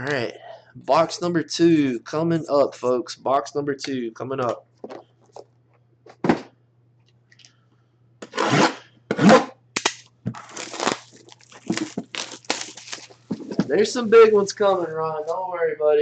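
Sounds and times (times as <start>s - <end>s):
packaging tearing and crinkling: 9.8s - 13.4s.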